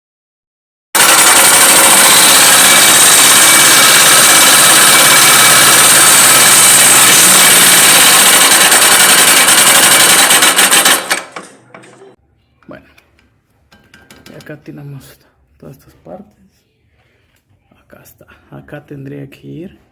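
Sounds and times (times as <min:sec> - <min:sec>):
motorcycle engine running: 0:01.0 - 0:11.4.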